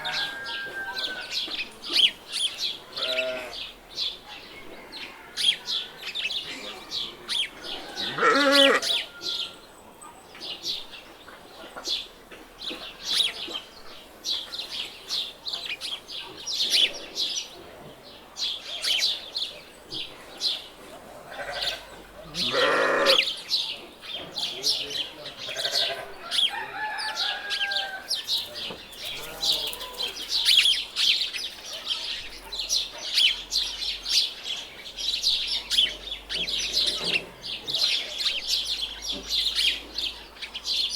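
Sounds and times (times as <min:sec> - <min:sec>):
farm animal calls: 0:00.0 - 0:02.2, 0:02.8 - 0:03.8, 0:04.4 - 0:09.6, 0:20.1 - 0:31.1
small birds chirping: 0:08.4 - 0:40.9.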